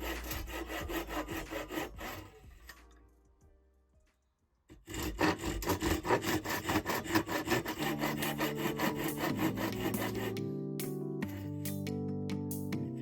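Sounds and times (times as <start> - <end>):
hand saw cutting wood: 0.0 - 2.9, 4.7 - 10.5, 11.2 - 11.8.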